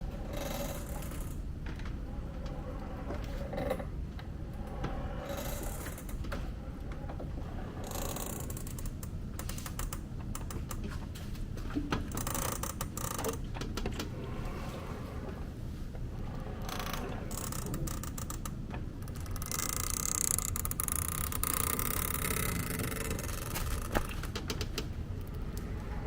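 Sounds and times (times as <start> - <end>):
mechanical clicking and rattling: 16.2 - 26.0
steady low rumble: 22.5 - 26.0.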